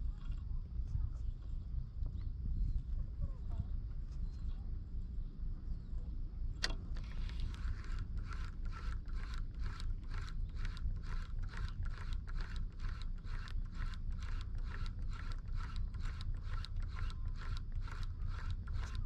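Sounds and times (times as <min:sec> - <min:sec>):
low steady rumble: 0:00.0 - 0:19.0
sharp click: 0:06.6 - 0:19.0
fishing reel gears rasping: 0:07.0 - 0:19.0.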